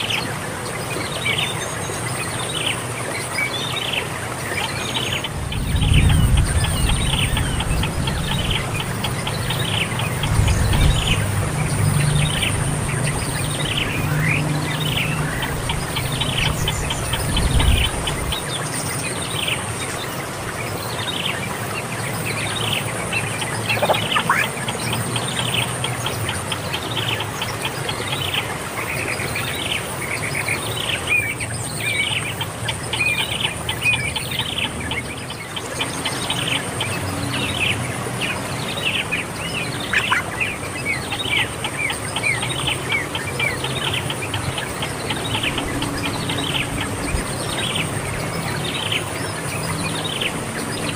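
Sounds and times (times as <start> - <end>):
birds chirping: 0.0 - 50.9.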